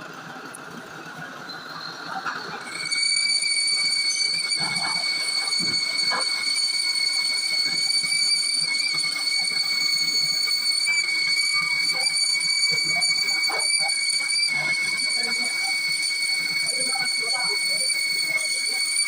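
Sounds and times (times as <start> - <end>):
lathe tool squealing: 1.5 - 19.0.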